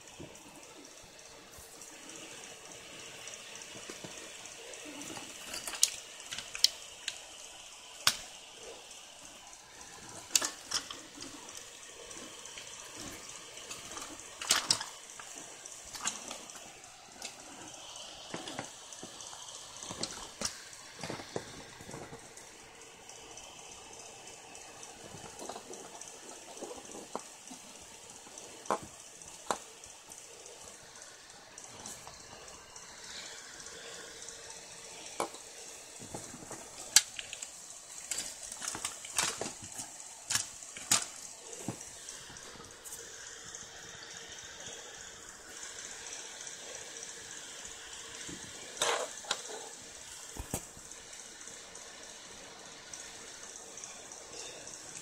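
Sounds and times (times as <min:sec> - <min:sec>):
steady hiss: 0:00.0 - 0:55.0
hard parts clicking and knocking: 0:03.4 - 0:07.3, 0:09.8 - 0:30.7, 0:35.0 - 0:43.0, 0:48.2 - 0:51.0.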